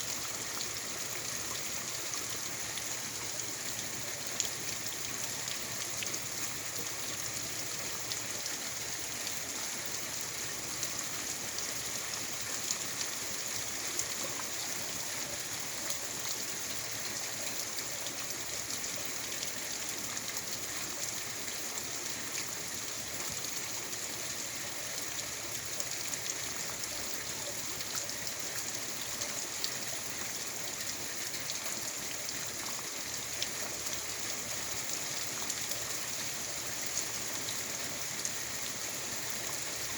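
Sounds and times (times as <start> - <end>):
small raindrops pattering: 0.0 - 39.9
steady rain falling: 0.0 - 39.9.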